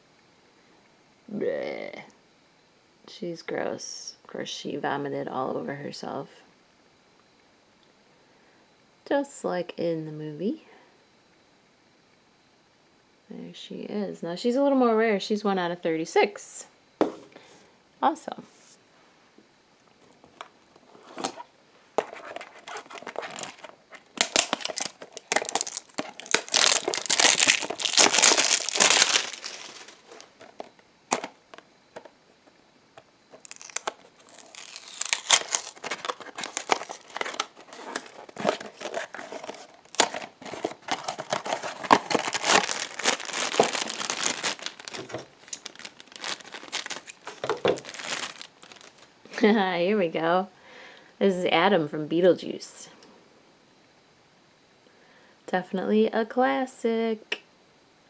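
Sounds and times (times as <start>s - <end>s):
packaging tearing and crinkling: 22.0s - 31.3s, 33.3s - 49.1s.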